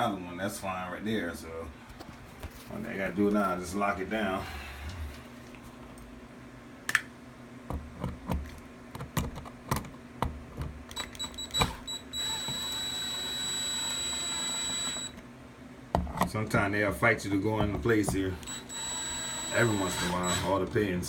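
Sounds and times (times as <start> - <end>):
power driver whining: 10.9 - 15.3, 18.0 - 21.0.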